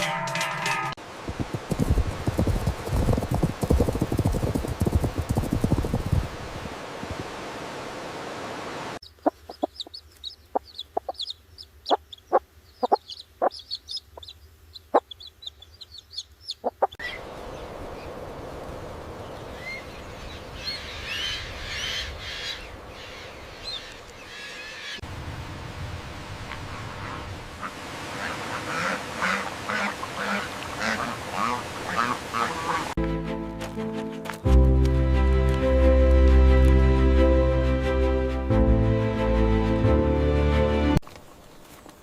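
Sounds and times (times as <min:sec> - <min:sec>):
steady outdoor hiss: 0:01.0 - 0:33.0, 0:41.0 - 0:42.0
chickens clucking: 0:09.0 - 0:17.0
small birds chirping: 0:09.0 - 0:18.2.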